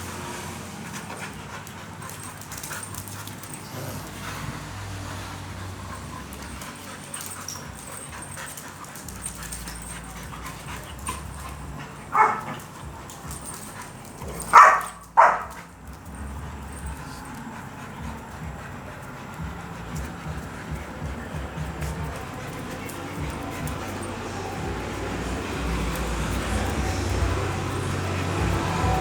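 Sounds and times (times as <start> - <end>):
dog barking: 9.2 - 15.7.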